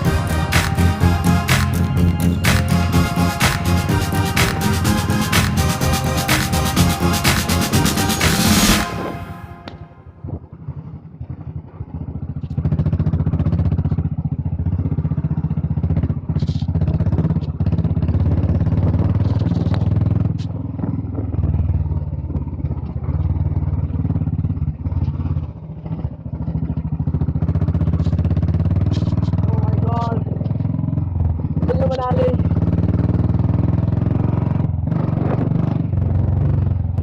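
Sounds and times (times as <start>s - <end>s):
motorcycle engine under load: 0.0s - 37.0s
clatter: 10.2s - 37.0s.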